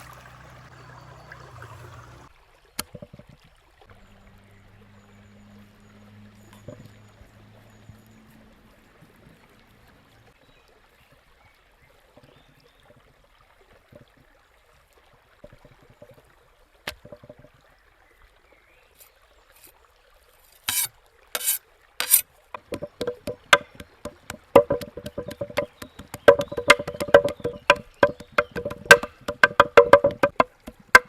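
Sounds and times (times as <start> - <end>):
faint trickling water: 0.0 - 31.0
sharp knocks on wood: 16.9 - 17.5, 22.0 - 31.0.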